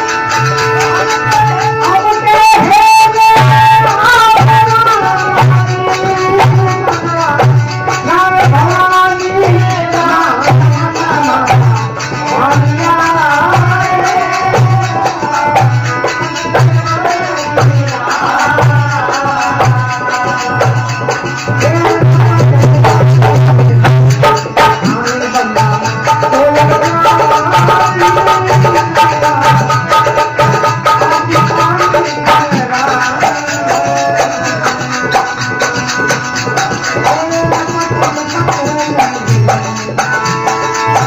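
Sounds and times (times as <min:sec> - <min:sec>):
devotional folk music: 0:00.0 - 0:41.0
rattling percussion: 0:00.0 - 0:41.0.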